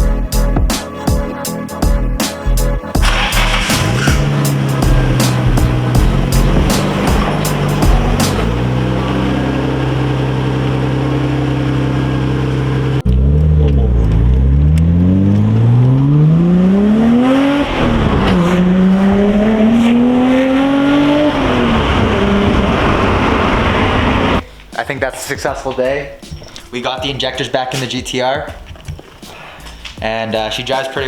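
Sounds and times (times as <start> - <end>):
car engine revving: 3.0 - 24.4
gear shift: 3.0 - 24.4.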